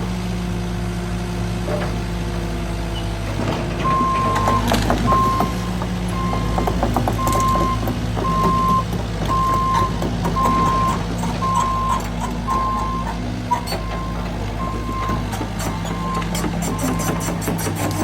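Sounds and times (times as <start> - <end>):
heavy machine engine running: 0.0 - 18.0
metal clanks: 3.1 - 18.0
back-up alarm beeping: 3.8 - 17.3.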